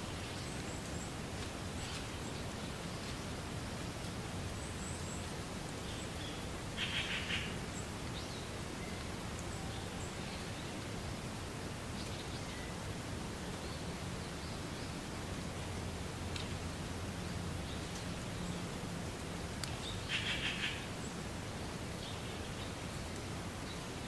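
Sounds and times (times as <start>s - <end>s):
wind rustling reeds: 0.0s - 9.4s.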